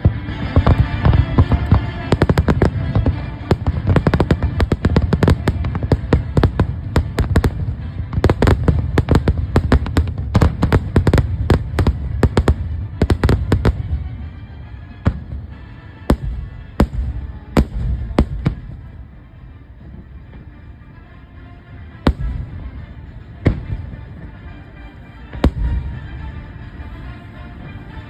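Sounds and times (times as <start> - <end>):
fireworks deep booms: 0.0 - 14.0
fireworks sharp bangs: 0.0 - 14.4, 15.0 - 18.9, 22.0 - 24.3, 25.3 - 26.3.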